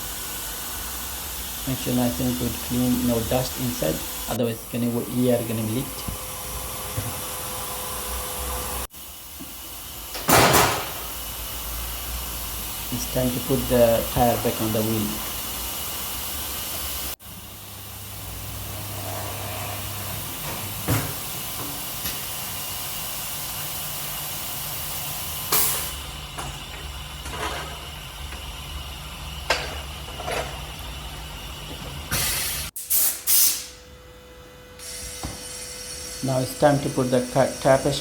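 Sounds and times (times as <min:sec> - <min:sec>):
steady machine hum: 0:00.0 - 0:32.8
compressed air hisses: 0:20.9 - 0:26.1, 0:32.1 - 0:33.8.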